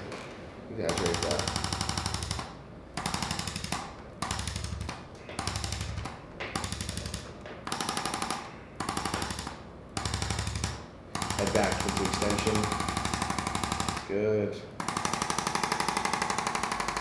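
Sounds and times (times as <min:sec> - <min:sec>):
electric percussion tool pulsing: 0:00.9 - 0:07.2.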